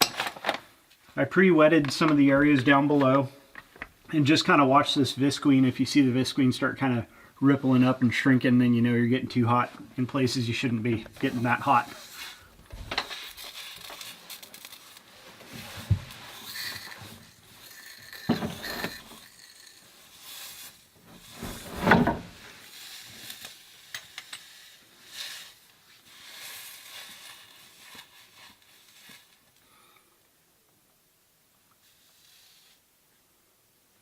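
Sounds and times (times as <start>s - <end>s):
knocks and clunks of handling: 21.4s - 22.4s.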